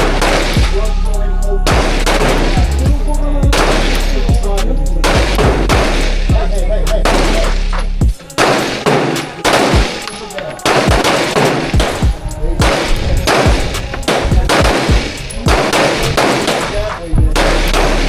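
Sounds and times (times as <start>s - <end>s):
gunshots with ringing echo: 0.0s - 0.7s, 1.7s - 2.6s, 3.5s - 4.2s, 7.0s - 7.5s, 8.1s - 18.0s.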